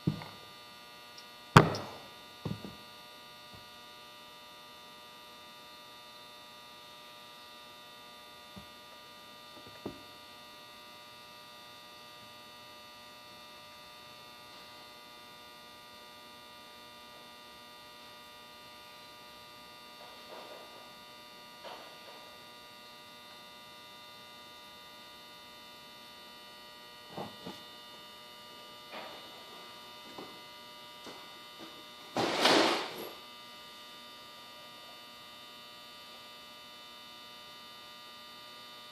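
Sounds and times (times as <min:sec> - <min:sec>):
electrical hum: 0:00.0 - 0:38.9.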